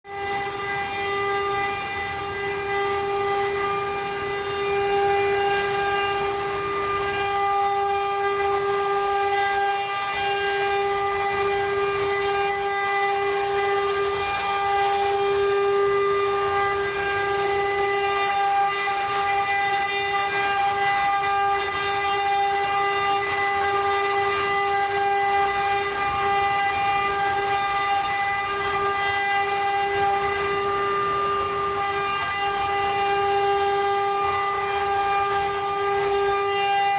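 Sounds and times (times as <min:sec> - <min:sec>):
router spindle high whine: 0:00.0 - 0:36.9.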